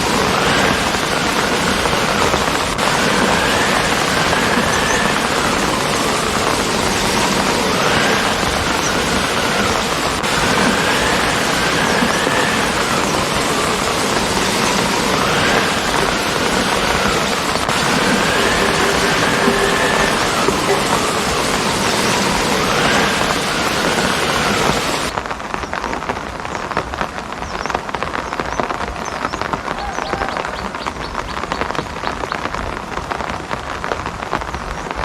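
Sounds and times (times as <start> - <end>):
faint wavering tone: 0.0 - 25.1
heavy rain falling: 0.0 - 35.0.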